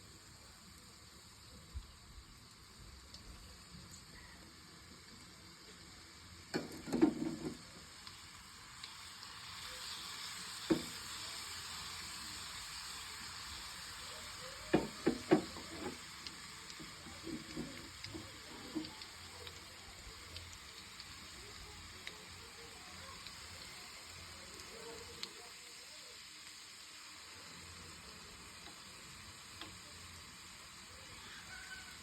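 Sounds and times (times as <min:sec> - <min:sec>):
spices sizzling in hot oil: 0:00.0 - 0:32.0
spoon scraping a pan: 0:14.8 - 0:16.0.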